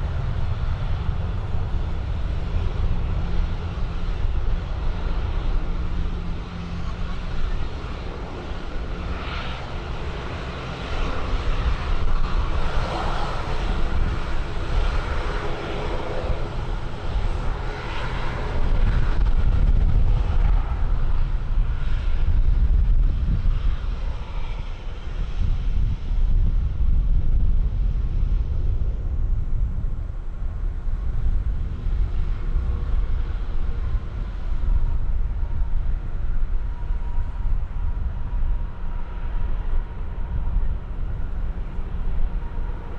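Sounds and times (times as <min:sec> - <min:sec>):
airplane engine roar: 0:00.0 - 0:42.9.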